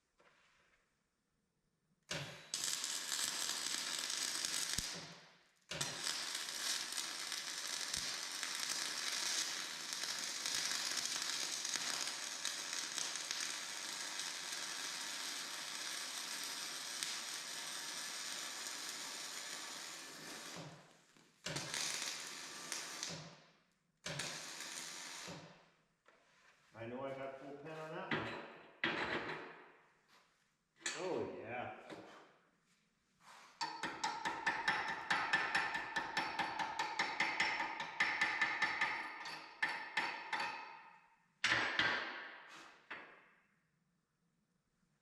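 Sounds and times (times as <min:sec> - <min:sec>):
electric welding arc: 0:02.1 - 0:20.8, 0:21.4 - 0:23.3, 0:24.1 - 0:25.5.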